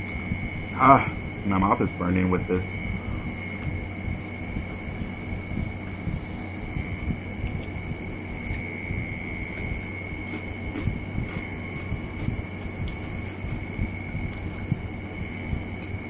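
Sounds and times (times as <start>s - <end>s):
high even whine: 0.0s - 16.0s
low hum: 0.0s - 16.0s
person eating corn: 3.2s - 14.7s.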